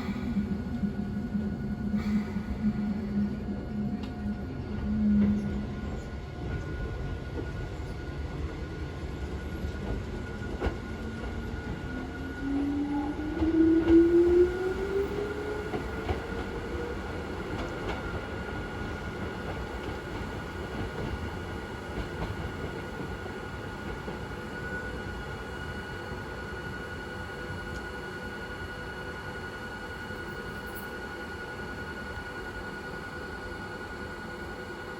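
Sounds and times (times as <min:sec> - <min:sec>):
steady high hum: 0:00.0 - 0:08.0.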